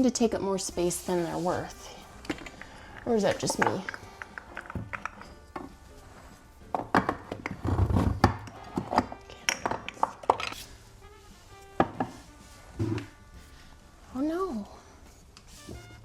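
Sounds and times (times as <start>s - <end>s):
jars knocking and clinking: 2.2s - 5.8s, 6.7s - 10.6s, 11.8s - 12.2s.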